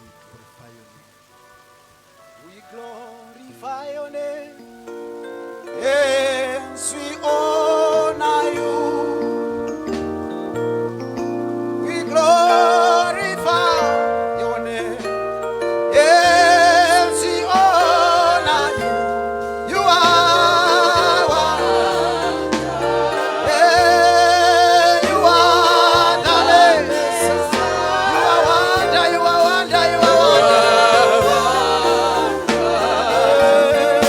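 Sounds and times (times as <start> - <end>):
singers with strong vibrato: 5.6 - 34.0
band with steady bass line: 8.5 - 34.0.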